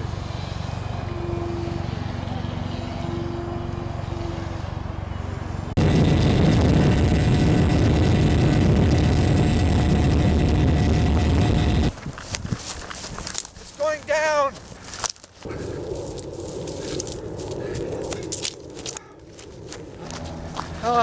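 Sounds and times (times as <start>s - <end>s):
model airplane motor droning: 0.0s - 4.9s, 5.8s - 11.9s.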